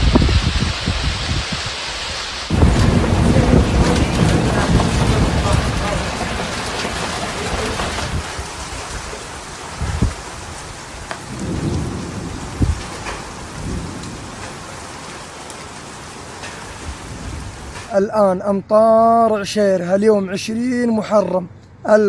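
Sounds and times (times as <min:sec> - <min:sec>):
thunder rumbling: 0:00.0 - 0:01.8, 0:02.4 - 0:18.0
heavy rain falling: 0:00.0 - 0:18.0.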